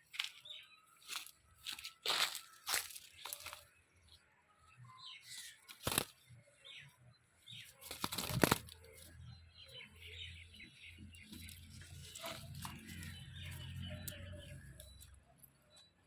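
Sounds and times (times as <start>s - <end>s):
parrot flapping wings: 5.7s - 6.2s, 7.8s - 8.8s.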